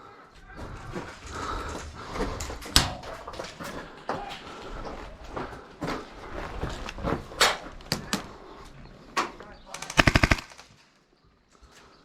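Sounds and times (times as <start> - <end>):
airsoft gun full-auto burst: 9.8 - 10.7.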